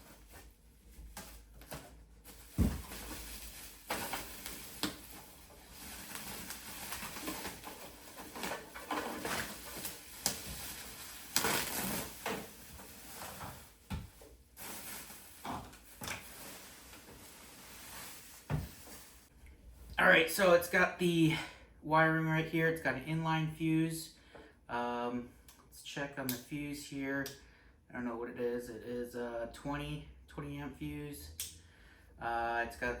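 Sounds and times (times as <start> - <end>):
packaging rustling and scraping: 0.0 - 19.3.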